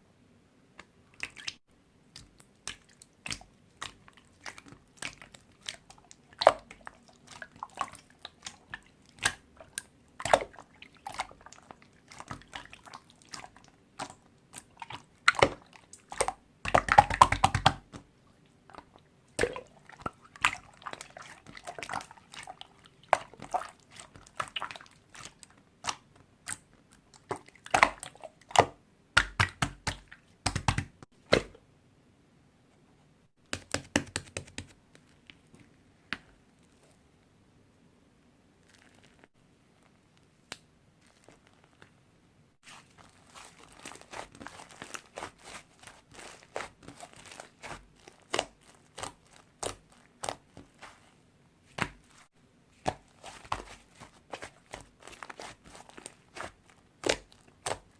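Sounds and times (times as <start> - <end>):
slime clicking and popping: 15.3 - 18.0.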